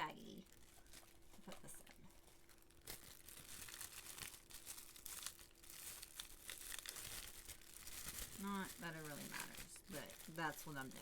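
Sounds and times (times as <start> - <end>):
plastic bag crinkling: 0.0 - 11.0.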